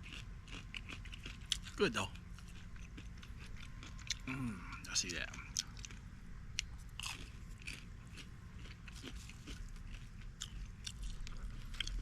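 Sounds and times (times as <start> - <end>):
person chewing crunchy food: 0.0 - 12.0.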